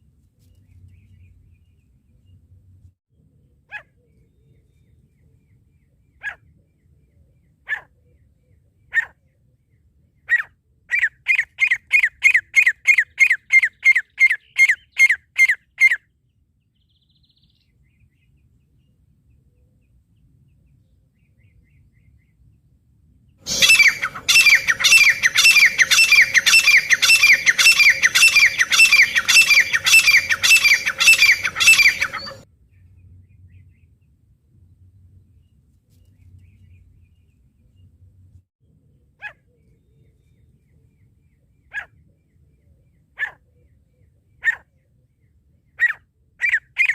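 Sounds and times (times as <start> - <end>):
francolin calls: 23.5 - 32.4.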